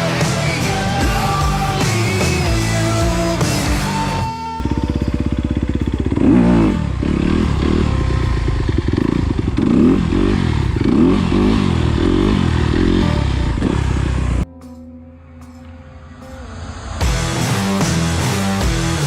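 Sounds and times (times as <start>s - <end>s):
dirt bike engine revving: 0.0s - 14.4s.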